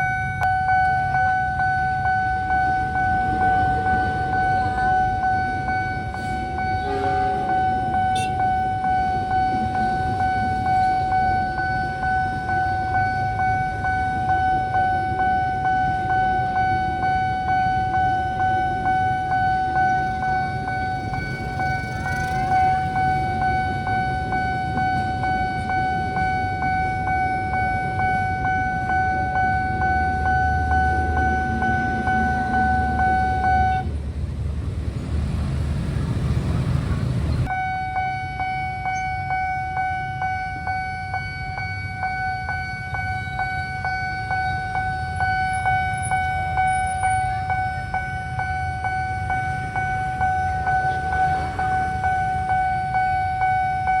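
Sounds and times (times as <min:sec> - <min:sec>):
level crossing alarm tone: 0:00.0 - 0:33.9, 0:37.4 - 0:54.0
low traffic rumble: 0:00.0 - 0:54.0.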